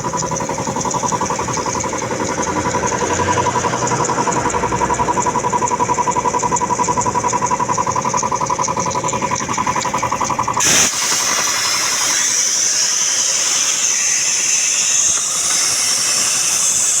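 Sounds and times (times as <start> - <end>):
piston air compressor running: 0.0 - 17.0
hiss of escaping air: 10.6 - 17.0.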